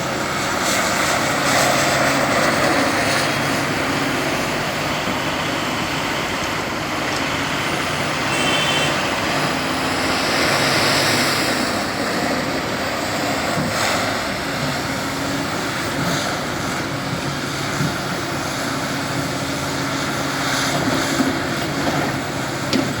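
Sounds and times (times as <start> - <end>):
diesel excavator engine running: 0.0 - 23.0.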